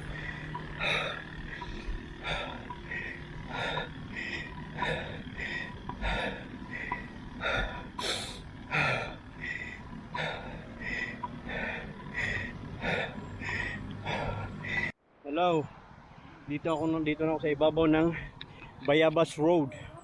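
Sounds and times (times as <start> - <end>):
fast heavy breathing: 0.0 - 15.0.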